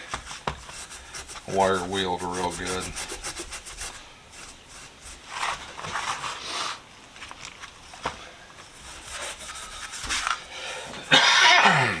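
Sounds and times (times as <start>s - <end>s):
steel wool scrubbing metal: 0.0s - 5.4s, 8.7s - 11.4s.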